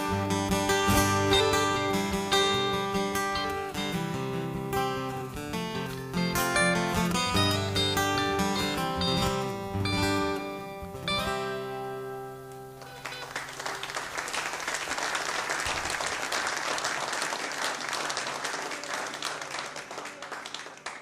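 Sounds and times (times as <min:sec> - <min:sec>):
acoustic guitar chord ringing: 0:00.0 - 0:14.0
audience applause: 0:12.8 - 0:21.0.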